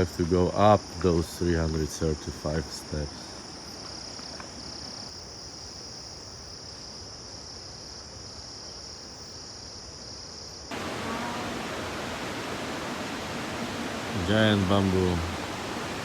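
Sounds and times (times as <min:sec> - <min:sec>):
background hiss: 0:00.0 - 0:16.0
insects droning: 0:00.0 - 0:16.0
rushing noise: 0:10.7 - 0:16.0.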